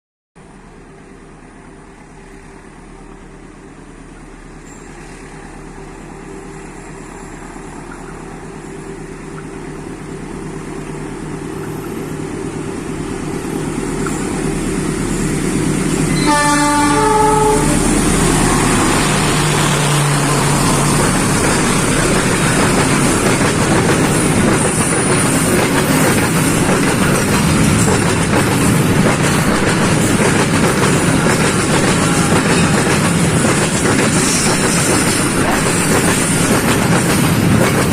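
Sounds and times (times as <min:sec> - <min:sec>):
train wagons rumbling and clacking: 0:04.2 - 0:37.9
train horn blast: 0:16.1 - 0:19.5.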